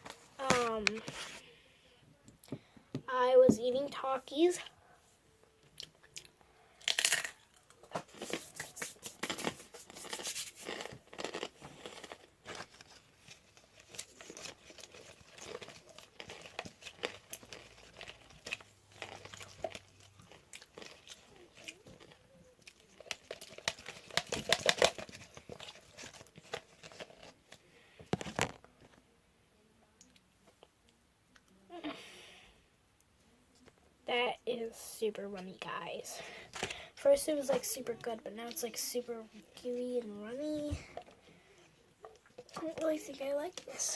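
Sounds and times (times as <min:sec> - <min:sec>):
sticky slime squelching: 0:00.4 - 0:01.4, 0:08.0 - 0:27.5.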